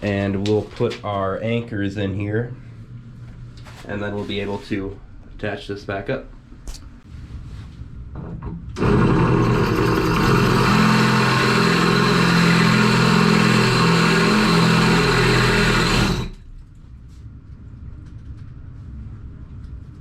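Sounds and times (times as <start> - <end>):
hammer drill boring: 8.8 - 16.4.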